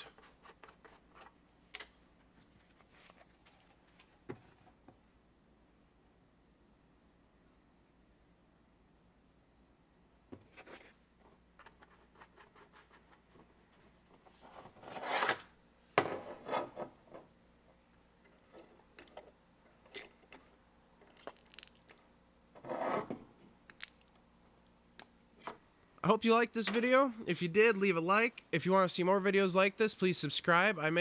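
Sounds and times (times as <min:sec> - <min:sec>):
small metal clicks and rubbing: 0:18.2 - 0:22.1, 0:23.7 - 0:24.2.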